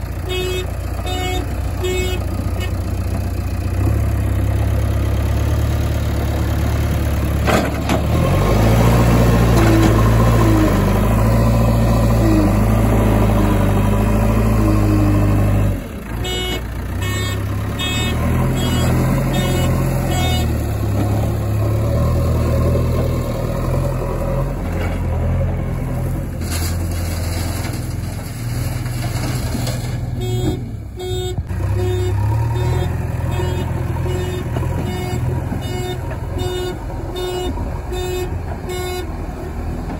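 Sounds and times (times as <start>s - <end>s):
heavy diesel engines running: 0.0s - 39.9s
short repeated beeps: 16.3s - 20.5s.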